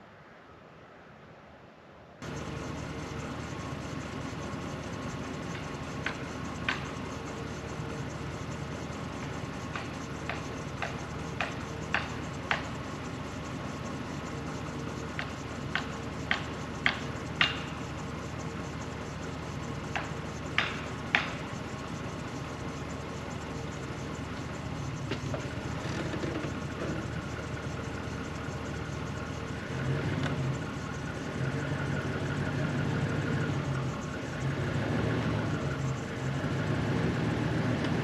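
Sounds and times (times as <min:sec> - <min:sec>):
engine idling: 0:02.2 - 0:38.0
sharp knocks: 0:09.7 - 0:12.8, 0:15.2 - 0:17.8, 0:19.9 - 0:21.5.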